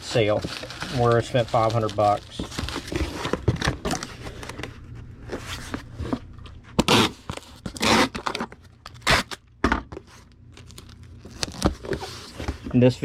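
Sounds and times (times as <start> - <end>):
packing materials rustling: 0.0 - 9.4
short tearing sounds: 6.8 - 8.3.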